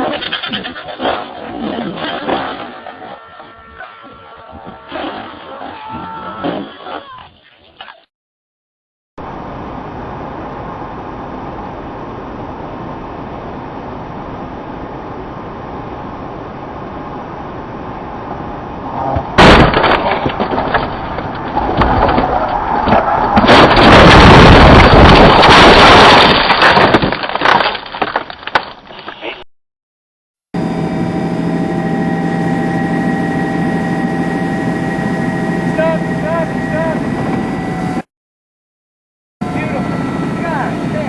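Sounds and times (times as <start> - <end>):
vehicle crash: 19.0 - 29.2
crunching and clattering: 19.2 - 29.4.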